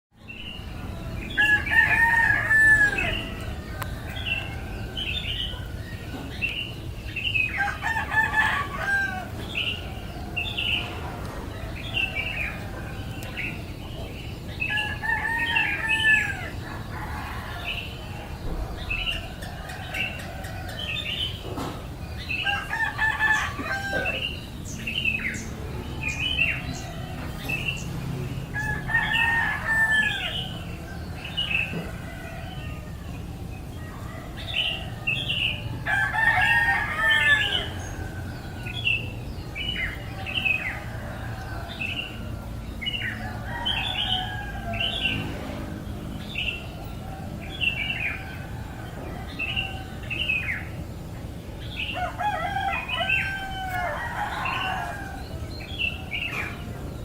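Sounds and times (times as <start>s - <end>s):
small birds chirping: 0.2s - 57.0s
rooster crowing: 1.0s - 5.7s, 7.5s - 13.5s, 14.6s - 18.3s, 22.2s - 24.5s, 25.3s - 39.0s, 39.6s - 45.6s, 51.7s - 56.7s.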